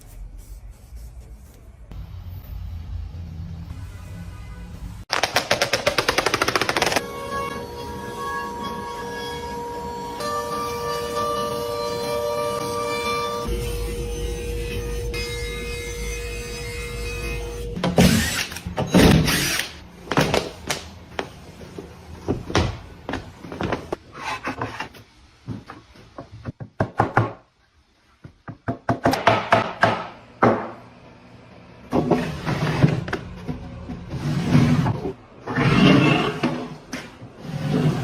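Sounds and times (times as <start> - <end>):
hand tools knocking on wood: 28.2 - 30.8.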